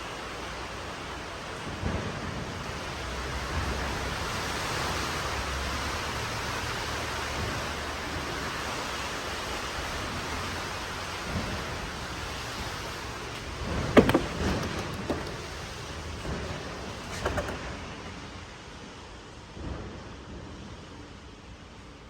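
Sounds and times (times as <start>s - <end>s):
storm wind and rain: 0.0s - 22.0s
light knock: 14.0s - 15.5s.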